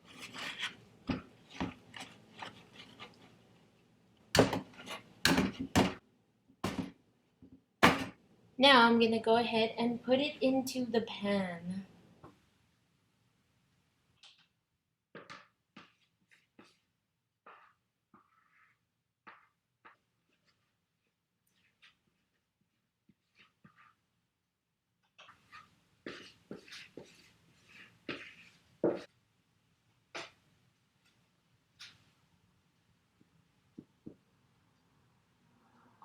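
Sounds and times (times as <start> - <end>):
spoon stirring batter: 0.0 - 3.7, 15.2 - 16.9, 17.5 - 18.7, 25.0 - 29.3.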